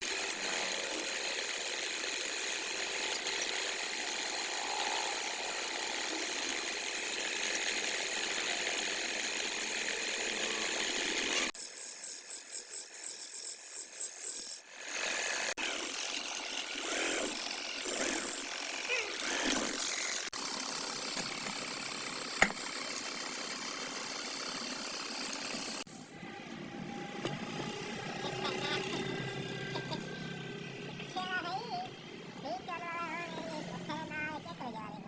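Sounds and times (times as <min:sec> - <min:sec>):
lathe tool scraping wood: 0:00.0 - 0:25.9.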